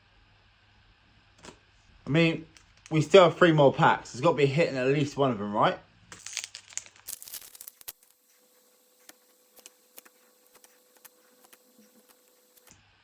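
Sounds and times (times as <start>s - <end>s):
cards being handled: 6.2s - 12.7s
foil wrapper tearing and crinkling: 6.2s - 12.7s.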